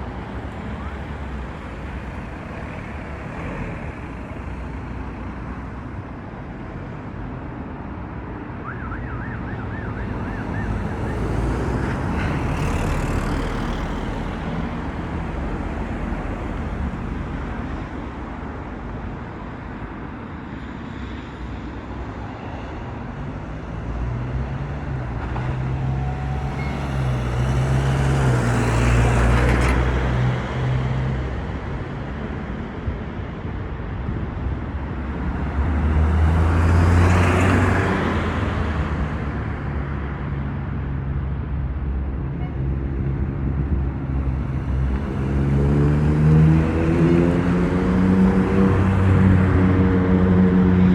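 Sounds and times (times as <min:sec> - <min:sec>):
vehicles passing: 0:00.0 - 0:50.9
warbling siren-like tone: 0:08.6 - 0:11.7.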